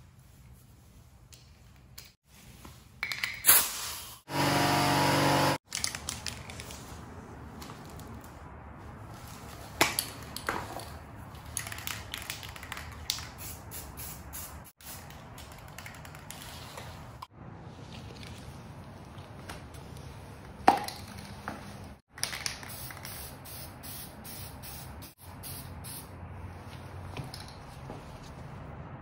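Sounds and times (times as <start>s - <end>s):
power tool cutting metal: 4.3s - 5.6s.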